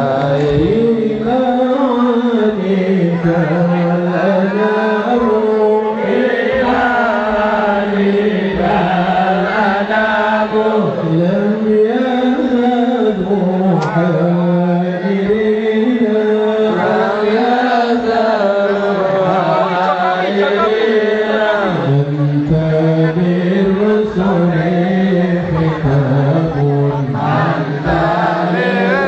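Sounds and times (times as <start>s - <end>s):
person chanting melismatic phrases: 13.2s - 29.0s.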